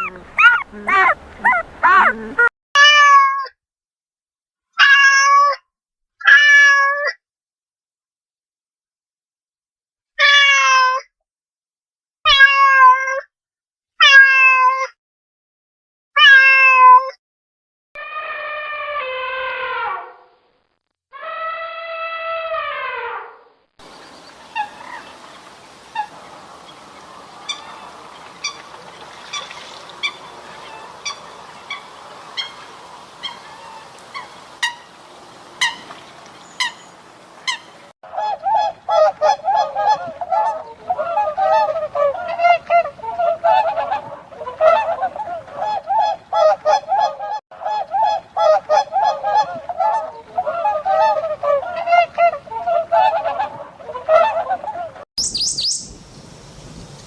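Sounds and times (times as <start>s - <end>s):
waterfowl honking: 0.0s - 2.3s, 23.8s - 37.9s, 38.5s - 47.4s, 48.0s - 55.9s
faint hiss: 23.8s - 37.8s, 55.2s - 57.0s
short high chirps: 55.2s - 55.9s.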